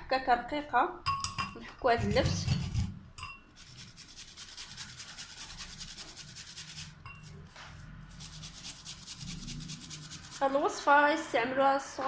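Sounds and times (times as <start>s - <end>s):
turnip grated on hand grater: 2.0s - 2.9s, 3.6s - 7.0s, 8.1s - 10.6s.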